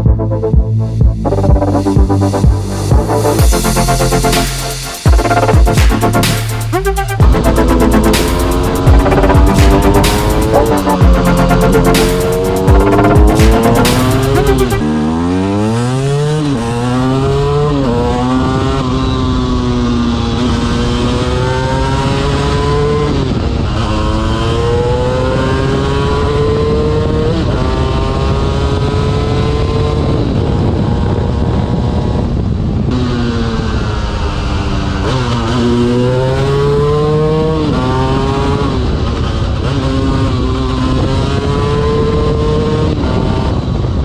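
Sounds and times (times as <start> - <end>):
two-stroke engine accelerating: 0.0 - 30.5.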